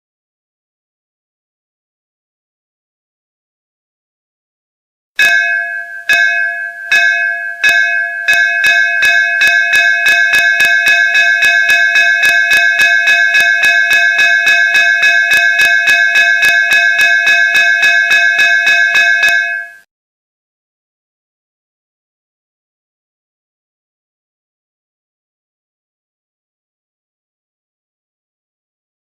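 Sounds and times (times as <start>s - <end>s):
metal school bell ringing: 5.2s - 19.9s.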